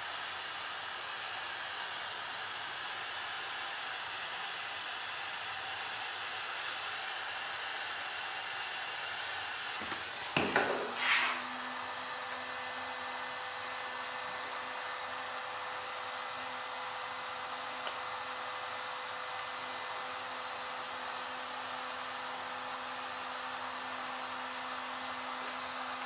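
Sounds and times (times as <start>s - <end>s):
heat gun blowing: 9.8s - 12.4s.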